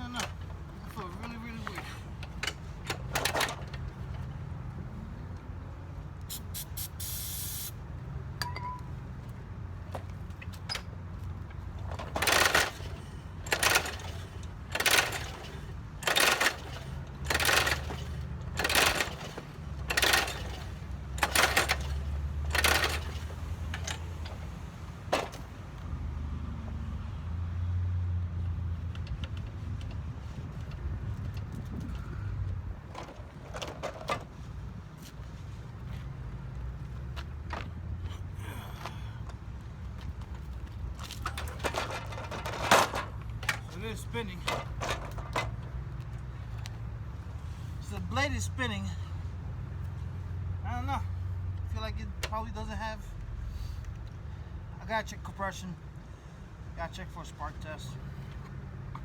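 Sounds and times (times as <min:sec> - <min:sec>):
lawn mower recoil starter pulled: 0:00.0 - 0:04.3, 0:11.8 - 0:25.5, 0:41.0 - 0:45.8
spray can hiss: 0:06.3 - 0:07.8.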